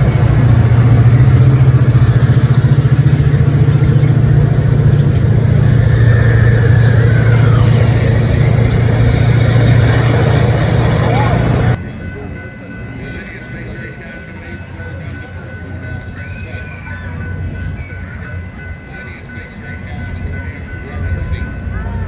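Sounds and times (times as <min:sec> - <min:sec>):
diesel locomotive engine throbbing: 0:00.0 - 0:22.0.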